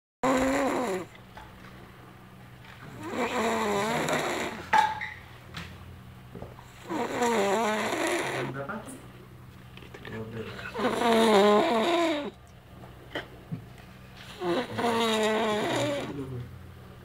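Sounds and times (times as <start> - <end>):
person snoring heavily: 0.2 - 1.1, 2.8 - 4.7, 6.7 - 8.6, 10.4 - 12.3, 14.3 - 16.3.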